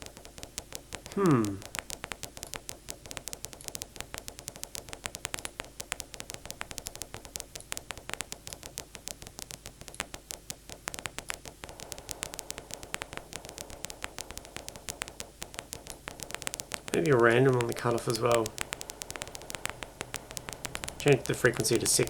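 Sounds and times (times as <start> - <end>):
filtered background noise: 0.0 - 22.0
synthesized paper crumpling crackle: 0.0 - 22.0.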